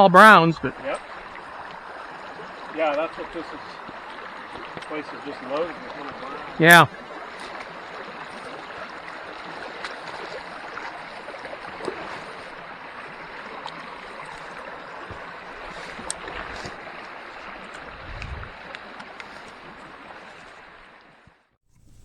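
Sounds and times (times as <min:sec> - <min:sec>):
creek water running: 0:00.0 - 0:22.0.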